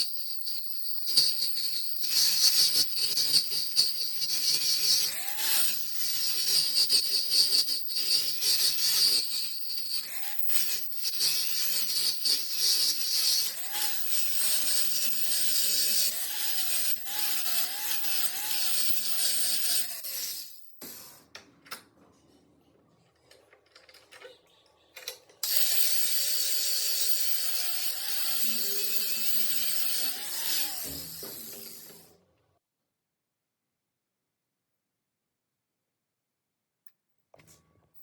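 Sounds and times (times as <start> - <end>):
power tool grinding steel: 0.0 - 21.2, 25.4 - 32.2.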